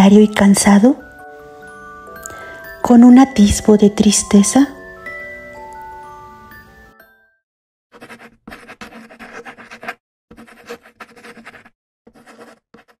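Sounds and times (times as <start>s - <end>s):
chime-like mallet notes: 0.0s - 7.4s
dry scratching: 8.0s - 13.0s.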